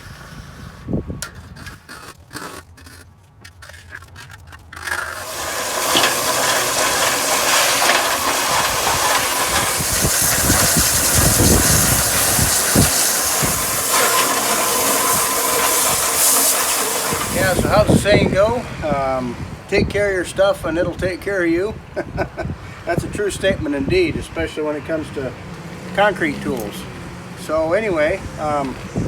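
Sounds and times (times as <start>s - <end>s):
knocks and scrapes of tools: 0.0s - 17.4s
strong water spray: 5.2s - 19.4s.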